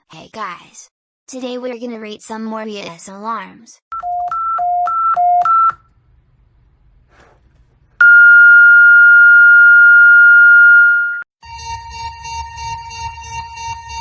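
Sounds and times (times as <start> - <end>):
steady single-pitch alert tone: 8.0 - 14.0
two-pitch electronic beep: 8.0 - 14.0.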